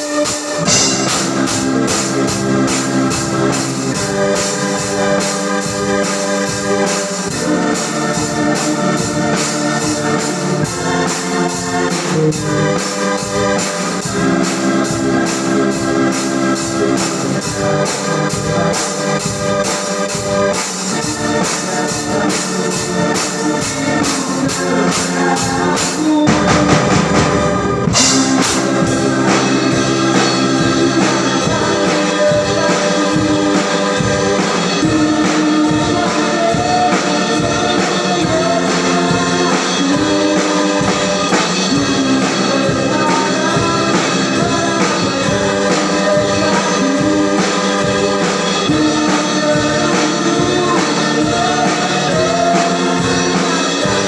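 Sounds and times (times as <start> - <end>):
singing over a band: 21.0 - 54.0.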